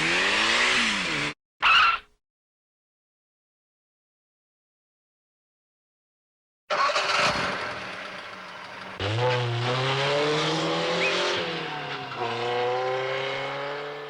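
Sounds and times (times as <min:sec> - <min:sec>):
cartoon car engine revving: 0:00.0 - 0:01.4, 0:06.7 - 0:08.2, 0:08.9 - 0:14.0.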